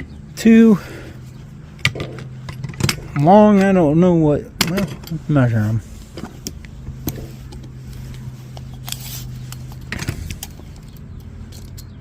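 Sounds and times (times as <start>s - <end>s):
low steady hum: 0.0s - 12.0s
metallic clicks and rattles: 6.4s - 12.0s.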